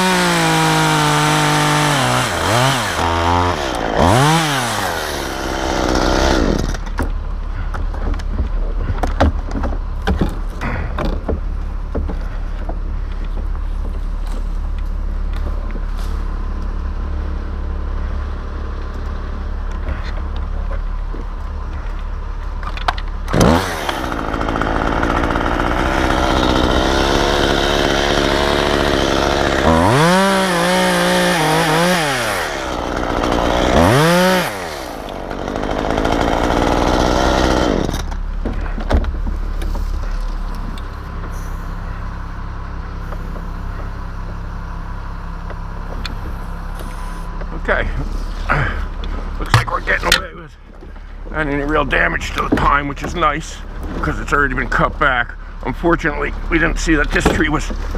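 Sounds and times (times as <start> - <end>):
chainsaw idling and cutting: 0.0 - 7.7, 23.2 - 38.9, 39.6 - 57.9.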